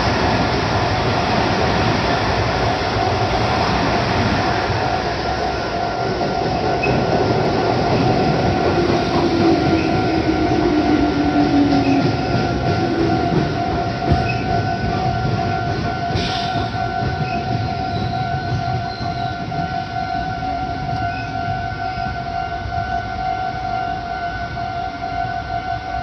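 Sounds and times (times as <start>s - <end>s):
train passing: 0.0s - 26.0s
level crossing warning bell: 4.7s - 26.0s.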